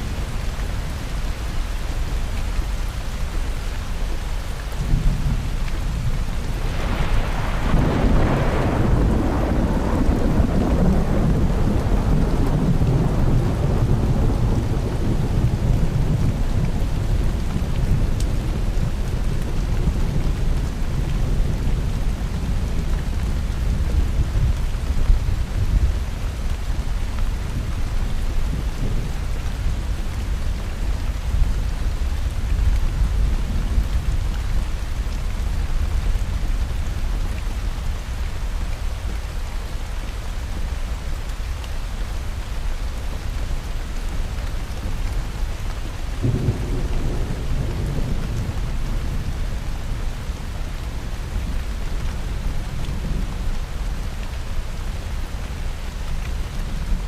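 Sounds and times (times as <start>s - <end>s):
steady rain: 0.0s - 57.0s
rolling thunder: 6.4s - 25.7s, 46.2s - 50.5s
sharp thunderclap: 6.6s - 16.3s.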